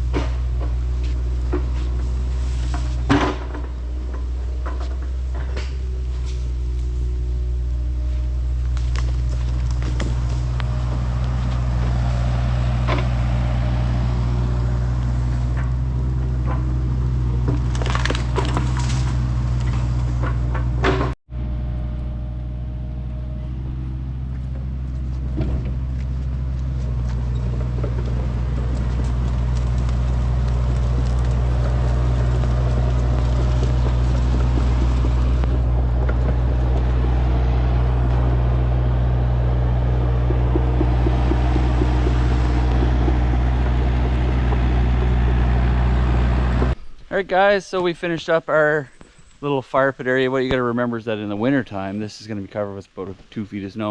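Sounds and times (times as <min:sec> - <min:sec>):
diesel engine running: 0:00.0 - 0:47.0
sharp cracks and knocks: 0:15.0 - 0:21.2.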